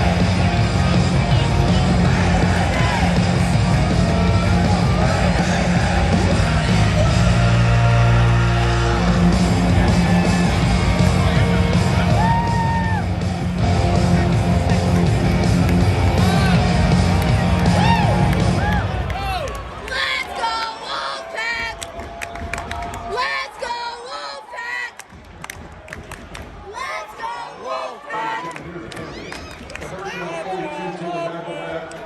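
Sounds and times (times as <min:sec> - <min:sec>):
rock song over loudspeakers: 0:00.0 - 0:19.2
crowd yelling and whooping: 0:00.0 - 0:25.0.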